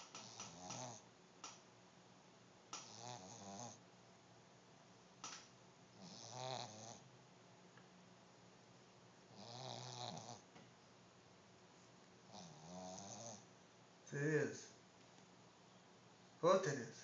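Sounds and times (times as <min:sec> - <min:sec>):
dog snoring: 0:00.1 - 0:01.0, 0:02.8 - 0:03.8, 0:06.0 - 0:07.1, 0:09.3 - 0:10.5, 0:12.3 - 0:13.5
short clicks: 0:05.2 - 0:05.5.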